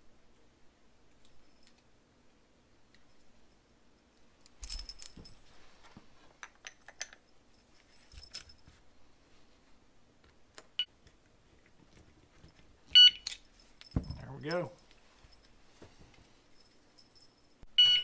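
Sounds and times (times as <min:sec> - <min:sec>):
small metal parts clinking: 0:04.4 - 0:05.6, 0:06.4 - 0:08.6, 0:13.2 - 0:15.5.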